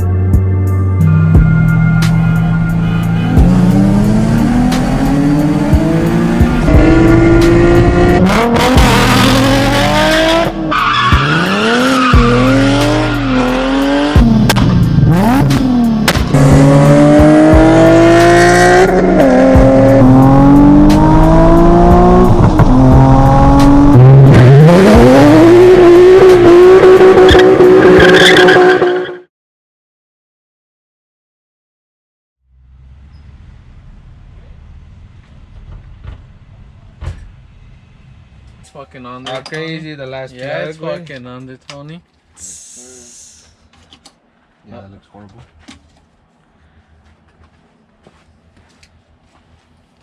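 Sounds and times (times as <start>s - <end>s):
car engine revving through gears: 3.3s - 29.1s.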